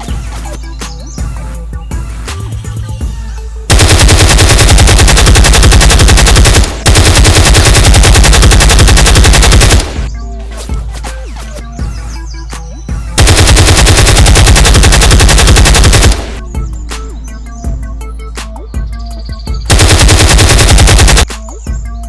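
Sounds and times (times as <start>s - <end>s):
automatic gunfire: 3.7s - 10.1s, 13.2s - 16.4s, 19.7s - 21.3s.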